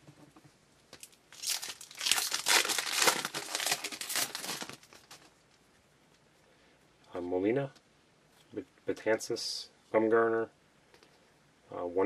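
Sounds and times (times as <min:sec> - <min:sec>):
foil wrapper crinkling and tearing: 0:01.0 - 0:05.3.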